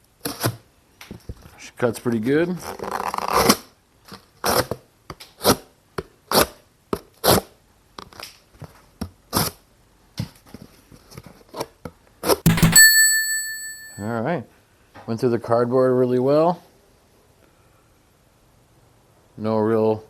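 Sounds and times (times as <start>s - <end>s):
sharp hit with metallic ring: 12.5s - 14.1s.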